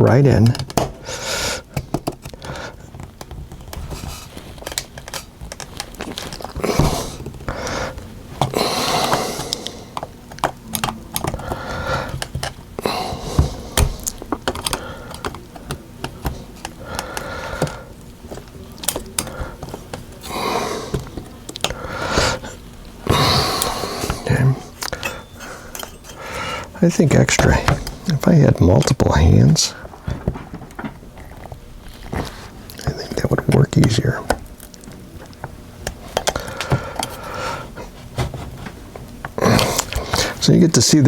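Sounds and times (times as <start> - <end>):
plastic clicks and scraping: 1.7 - 12.6, 13.4 - 20.3.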